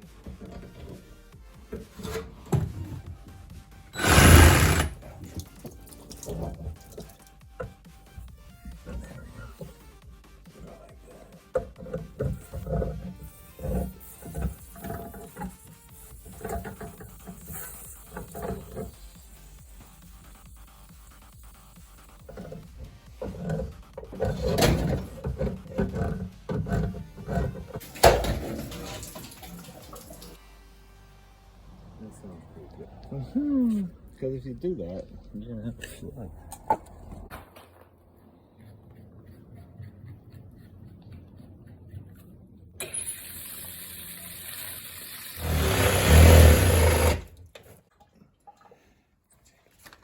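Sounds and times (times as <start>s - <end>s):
power tool running: 4.0s - 5.1s, 42.8s - 47.4s
hand saw rasping through drywall: 4.0s - 5.4s, 10.5s - 19.2s, 22.0s - 29.5s, 45.4s - 47.3s.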